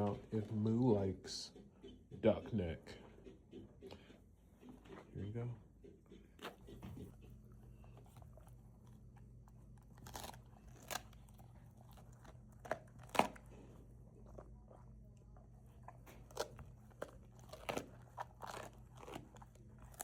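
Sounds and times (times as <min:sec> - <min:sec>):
dog chewing bone: 0:05.7 - 0:20.0.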